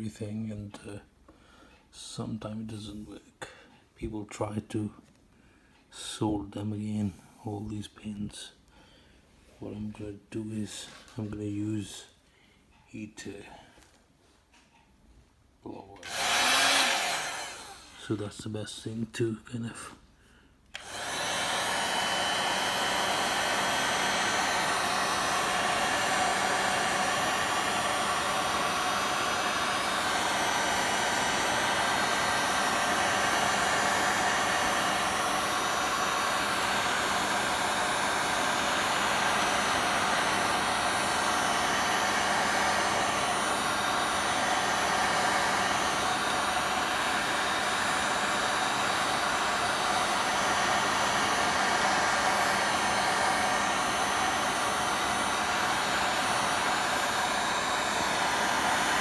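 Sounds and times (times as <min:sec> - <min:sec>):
fan motor hum: 0:16.0 - 0:18.2, 0:20.8 - 0:59.0
heat gun blowing air: 0:16.0 - 0:18.2, 0:20.7 - 0:59.0.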